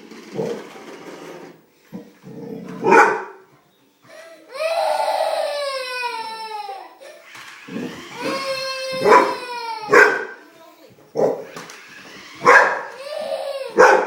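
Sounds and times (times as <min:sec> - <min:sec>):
dog barking: 0:02.8 - 0:03.4, 0:09.0 - 0:10.4, 0:11.2 - 0:11.5, 0:12.4 - 0:12.9, 0:13.8 - 0:14.0
dog whining: 0:07.6 - 0:10.3.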